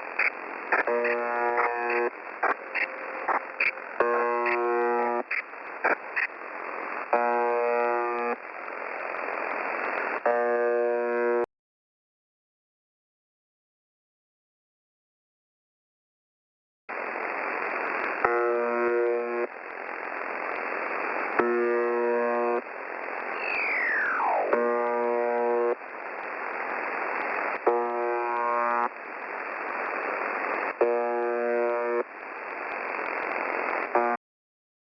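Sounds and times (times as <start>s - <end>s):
radio hiss: 0.0s - 11.4s, 16.9s - 34.2s
harsh radio buzz tones: 0.0s - 11.5s, 16.9s - 34.2s
descending whistle: 23.4s - 24.3s.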